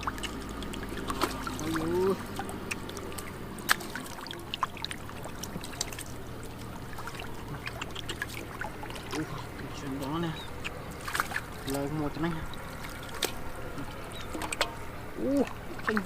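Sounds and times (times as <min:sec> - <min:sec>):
muddy water trickling and splashing: 0:00.0 - 0:16.0
small ticks and drips: 0:00.0 - 0:16.0.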